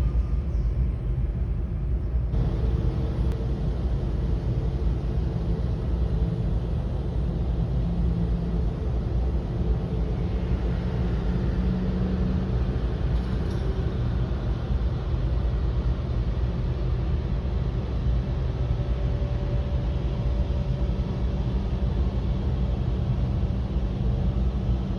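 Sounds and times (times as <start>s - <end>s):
jet engines rumbling: 0.0s - 13.1s.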